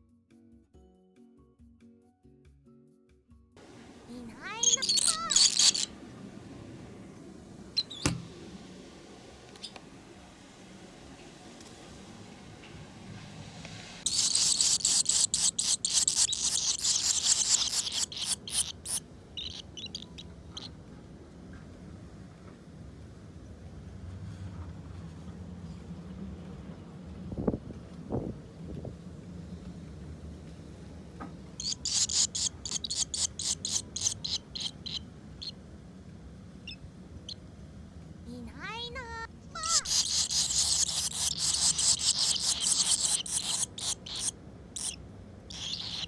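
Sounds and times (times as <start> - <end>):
nestlings chirping rapidly: 4.1 - 6.0, 7.8 - 8.1, 14.0 - 20.7, 31.6 - 35.6, 39.6 - 46.0
swallows scratchy calls: 4.4 - 6.0, 14.0 - 20.7, 31.6 - 35.5, 39.6 - 46.0
low wind rumble: 19.2 - 31.6.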